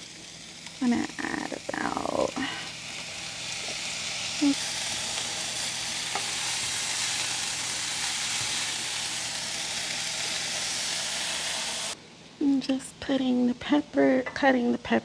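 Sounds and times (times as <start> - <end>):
meat sizzling in a frying pan: 0.0 - 12.0.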